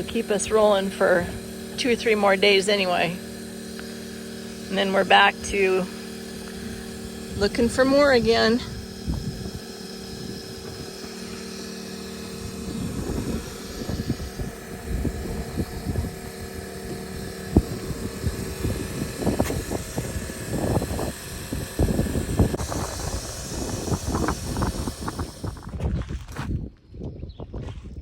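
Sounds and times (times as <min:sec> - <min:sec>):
vehicle hum: 0:00.0 - 0:25.7
wind buffeting microphone: 0:06.4 - 0:28.0.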